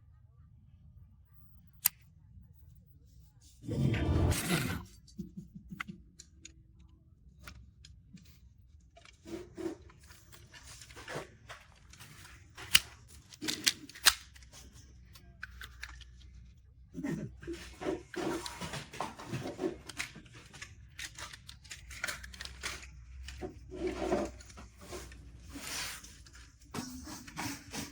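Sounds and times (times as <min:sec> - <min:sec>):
plastic toy clicks and rustles: 0:09.9 - 0:16.5, 0:19.7 - 0:26.5
sharp plastic clicks: 0:12.6 - 0:14.5.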